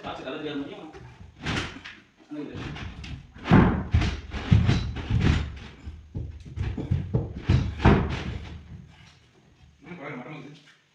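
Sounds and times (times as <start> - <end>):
heavy thuds on wood: 1.0 - 2.0, 2.6 - 9.1.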